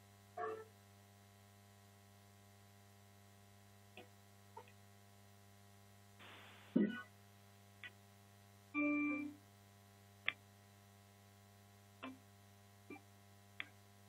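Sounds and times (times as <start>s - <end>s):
faint clicks and taps: 13.6s - 13.8s.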